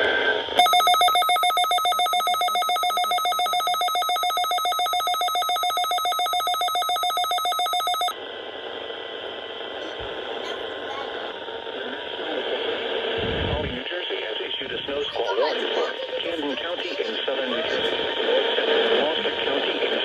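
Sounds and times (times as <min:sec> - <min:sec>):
pulsing electronic alarm: 0:00.6 - 0:08.2
faint radio hiss: 0:08.6 - 0:20.0.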